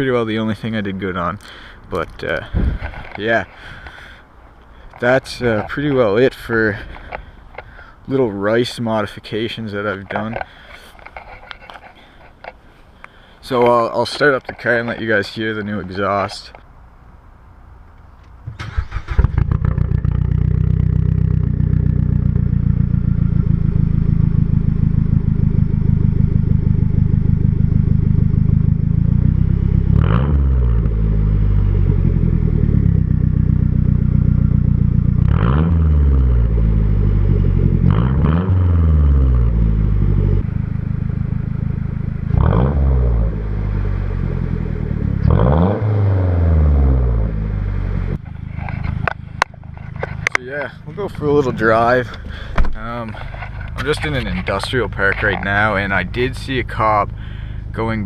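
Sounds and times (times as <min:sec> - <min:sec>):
car engine idling and revving: 0:18.0 - 0:58.0
car engine starting: 0:18.2 - 0:58.0.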